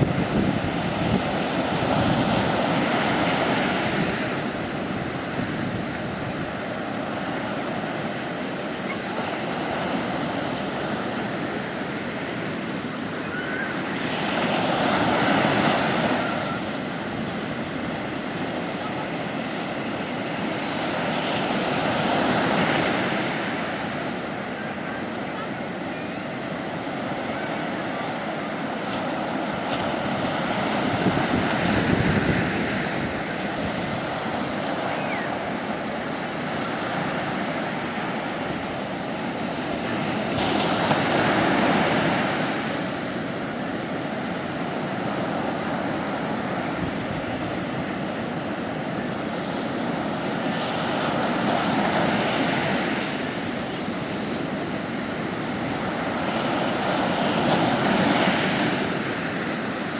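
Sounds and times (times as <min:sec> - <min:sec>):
sea waves breaking on a beach: 0:00.0 - 0:59.9.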